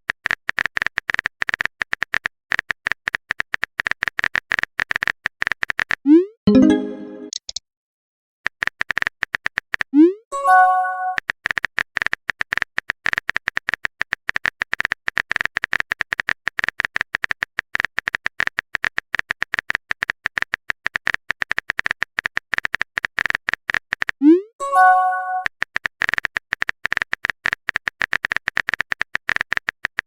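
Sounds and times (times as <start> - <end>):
notification chime: 6.5 - 7.4, 10.4 - 11.2, 24.6 - 25.4.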